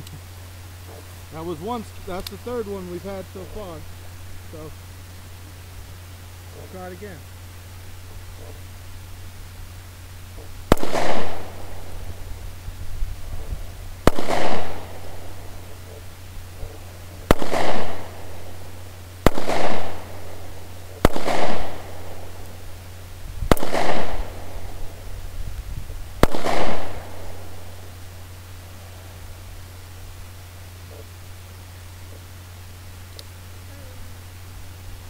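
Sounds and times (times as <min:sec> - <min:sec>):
pistol shots with echo: 0:10.7 - 0:12.2, 0:14.0 - 0:16.0, 0:16.6 - 0:22.6, 0:23.5 - 0:24.9, 0:26.2 - 0:27.9.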